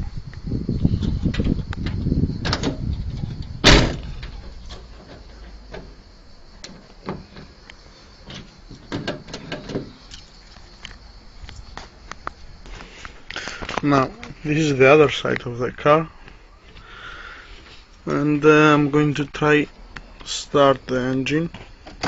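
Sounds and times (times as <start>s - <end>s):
low rumbling handling noise: 0.0s - 12.8s
car door slamming: 3.6s - 6.0s.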